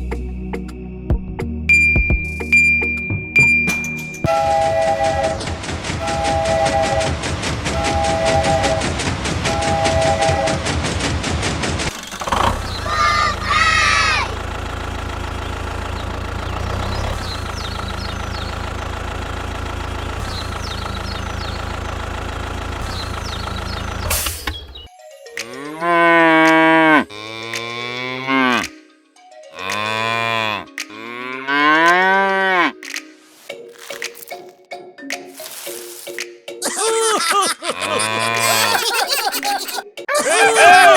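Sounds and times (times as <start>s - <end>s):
cow mooing: 25.4s - 28.6s, 29.6s - 32.8s.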